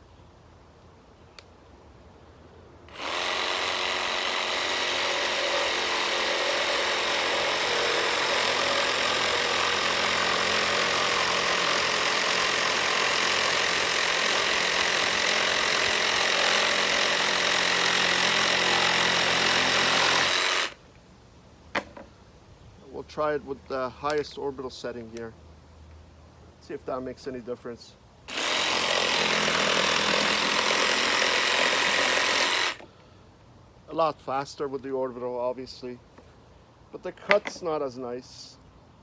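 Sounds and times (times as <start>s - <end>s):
jigsaw sawing through wood: 2.9s - 20.8s, 28.3s - 32.8s.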